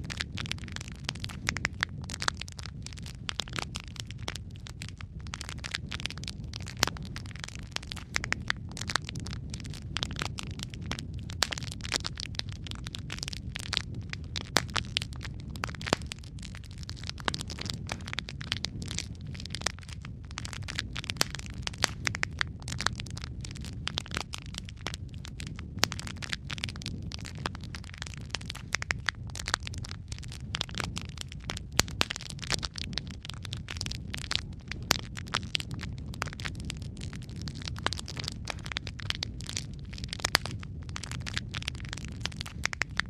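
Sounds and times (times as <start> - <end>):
fire rumbling in fireplace: 0.0 - 43.0
logs crackling and popping: 0.0 - 43.0.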